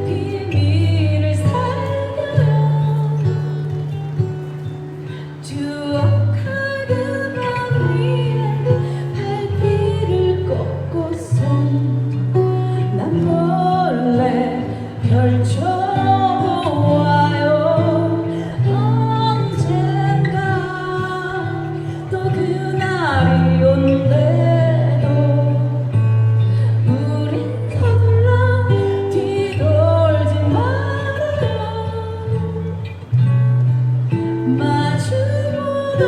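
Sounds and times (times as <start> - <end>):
woman singing: 0.0 - 33.3, 34.1 - 36.0
acoustic guitar: 0.0 - 36.0.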